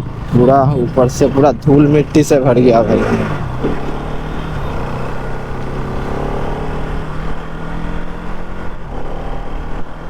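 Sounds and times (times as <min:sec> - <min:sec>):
motorcycle engine cruising: 0:00.0 - 0:10.0
wind and road noise: 0:00.0 - 0:10.0.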